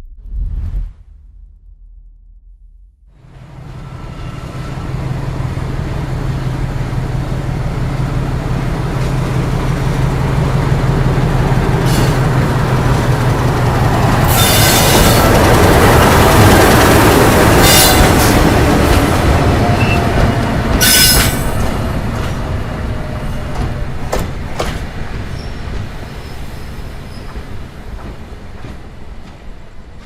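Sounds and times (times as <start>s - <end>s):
train wheels rumbling on rails: 3.2s - 30.0s
high wheel squeals: 14.3s - 15.2s, 20.8s - 21.5s.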